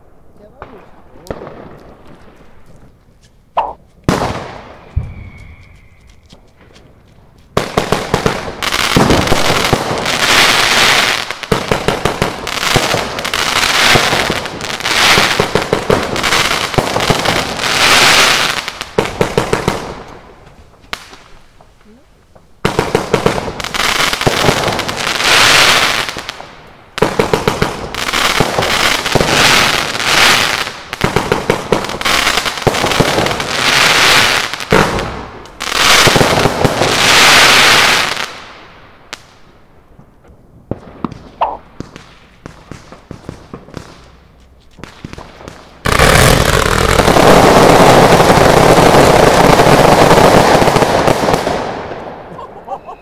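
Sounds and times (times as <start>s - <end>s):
dense fireworks crackle: 0.0s - 53.0s
fireworks shots and bursts: 0.0s - 53.0s
scattered fireworks pops: 0.6s - 10.6s, 40.0s - 49.3s.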